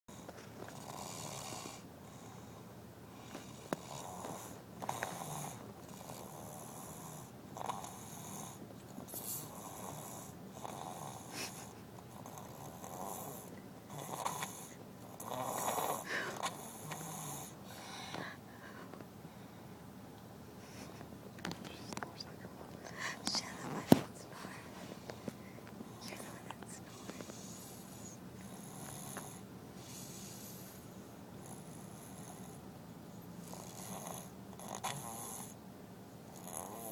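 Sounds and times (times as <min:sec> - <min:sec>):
child snoring: 0:00.1 - 0:02.5, 0:03.5 - 0:18.0, 0:27.4 - 0:30.8, 0:31.4 - 0:32.6, 0:33.4 - 0:35.6, 0:36.3 - 0:36.9.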